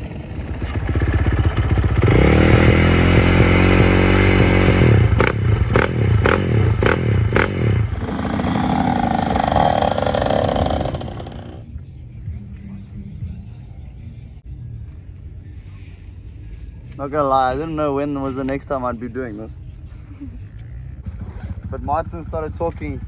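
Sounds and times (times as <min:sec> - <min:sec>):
dirt bike engine running: 0:00.0 - 0:11.7, 0:20.6 - 0:23.0.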